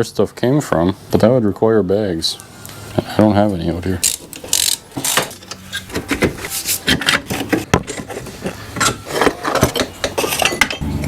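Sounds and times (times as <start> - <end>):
metal parts and tools clinking: 4.0 - 10.9.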